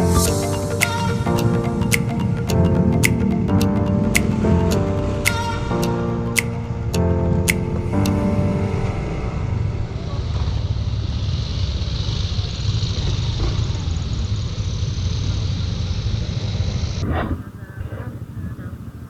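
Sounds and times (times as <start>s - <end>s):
scooter engine and road rumble: 8.8s - 19.0s.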